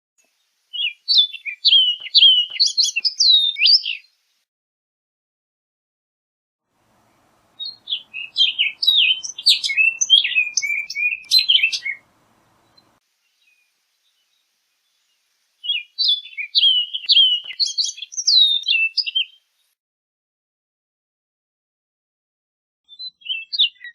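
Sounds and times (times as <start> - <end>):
oriole singing whistled notes: 0.8 - 4.1, 6.9 - 13.6, 15.6 - 19.5, 22.9 - 23.9.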